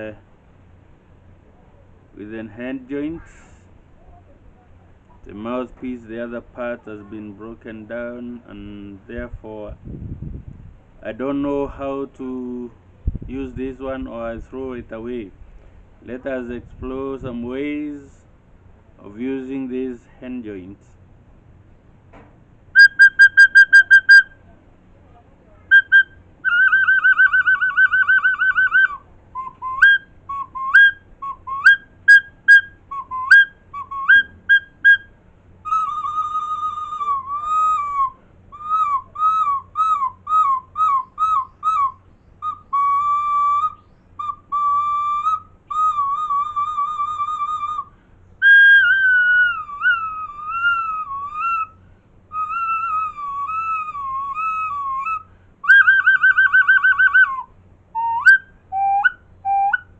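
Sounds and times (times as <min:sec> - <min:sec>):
shrill warbling whistle tone: 0:22.8 - 0:24.4, 0:25.7 - 0:59.9.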